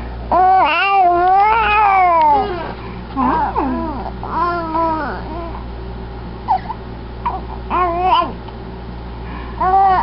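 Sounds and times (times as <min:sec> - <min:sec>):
baby babbling: 0:00.3 - 0:05.6, 0:06.5 - 0:08.4, 0:09.6 - 0:10.0.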